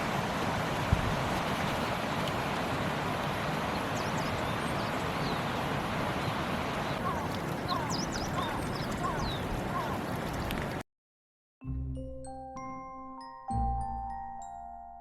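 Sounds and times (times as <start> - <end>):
flowing water rushing: 0.0 - 10.8
small birds chirping: 6.2 - 10.6.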